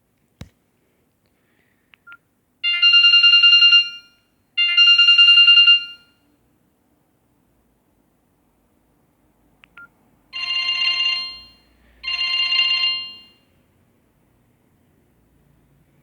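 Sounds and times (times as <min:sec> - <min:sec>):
mobile phone ringtone: 0:02.6 - 0:06.1, 0:10.4 - 0:13.5.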